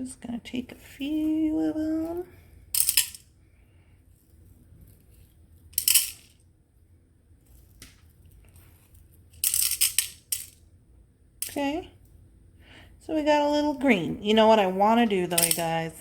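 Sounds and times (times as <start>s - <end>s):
beads clattering and clinking: 4.9s - 6.4s, 7.5s - 10.6s.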